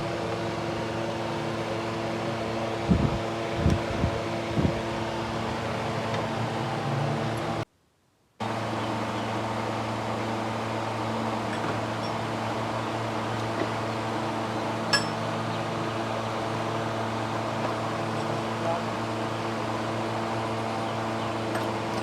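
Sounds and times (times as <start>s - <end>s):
electric fan humming: 0.0s - 7.7s.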